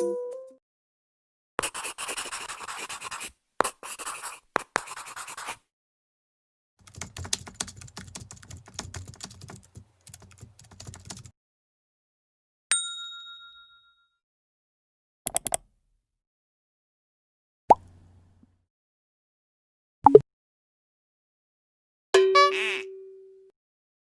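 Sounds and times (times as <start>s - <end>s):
rapid keyboard typing: 6.8s - 11.3s.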